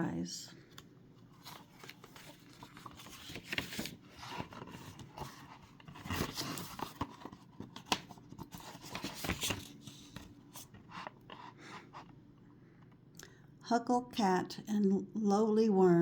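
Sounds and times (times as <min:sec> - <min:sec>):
book pages rustling and turning: 0:00.6 - 0:12.2.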